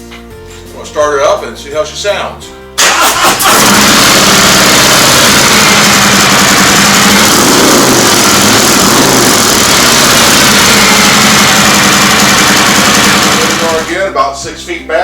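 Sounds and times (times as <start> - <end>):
motorcycle engine idling loudly: 3.5 - 14.0.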